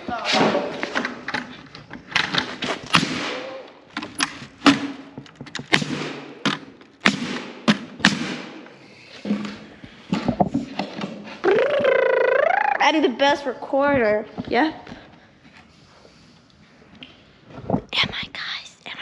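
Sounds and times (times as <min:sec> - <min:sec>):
knocks and thuds on wood and metal: 0:00.0 - 0:11.3.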